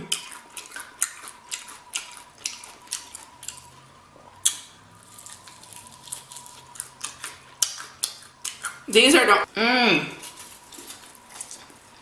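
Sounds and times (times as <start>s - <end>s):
wet mouth smacking while chewing: 0.1s - 3.8s, 4.4s - 8.9s.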